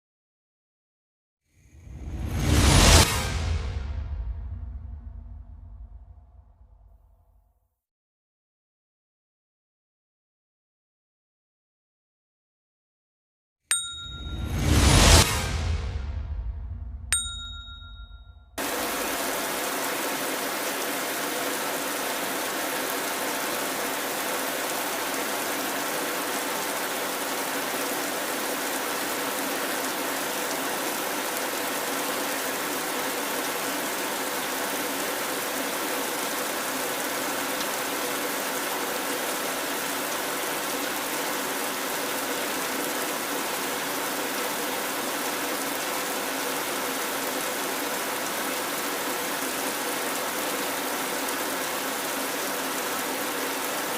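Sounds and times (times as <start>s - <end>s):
rain on a metal roof: 18.6s - 53.9s.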